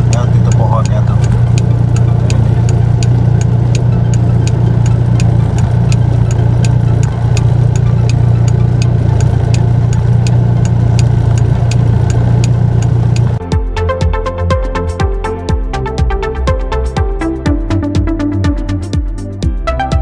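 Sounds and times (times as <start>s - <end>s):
fast regular ticking: 0.0s - 13.4s.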